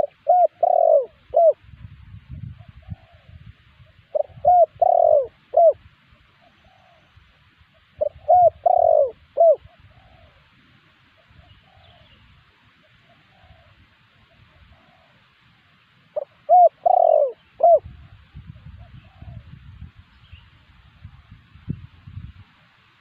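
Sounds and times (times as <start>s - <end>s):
dove cooing: 0.0s - 1.6s, 2.6s - 5.8s, 6.4s - 7.2s, 7.8s - 10.5s, 11.2s - 12.2s, 12.8s - 15.3s, 16.1s - 19.5s.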